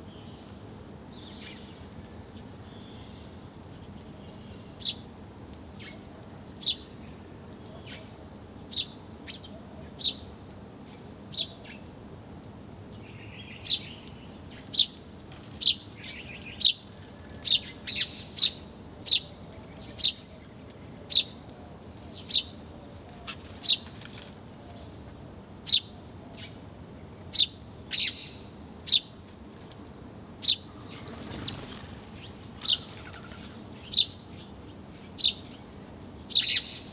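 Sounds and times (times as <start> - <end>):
low background hiss: 0.0 - 36.9
birds chirping: 30.4 - 36.9.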